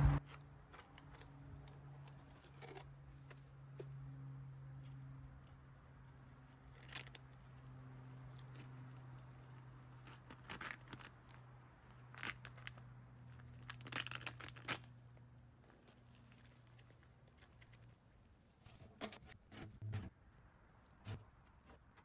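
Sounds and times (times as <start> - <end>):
steady low hum: 0.0 - 0.2
scraping and crinkling handling noises: 0.0 - 22.0.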